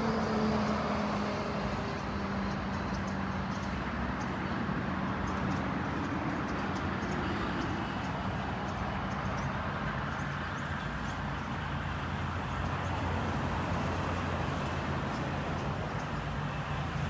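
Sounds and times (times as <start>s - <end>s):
low engine hum: 11.4s - 17.0s.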